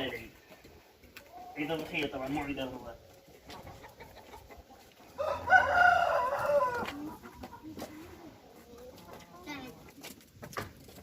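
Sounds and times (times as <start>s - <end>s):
rooster crowing: 5.2s - 7.0s.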